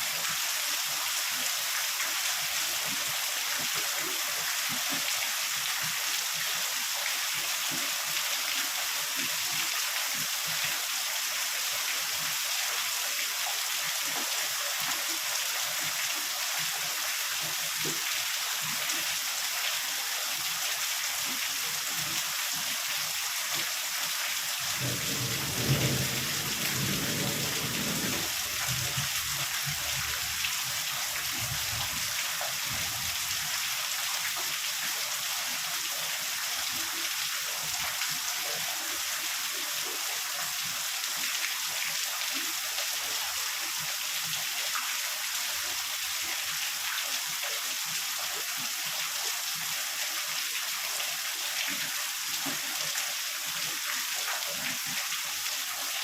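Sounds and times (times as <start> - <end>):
heavy rain: 24.2 - 33.5
thunder rumble: 24.8 - 28.3.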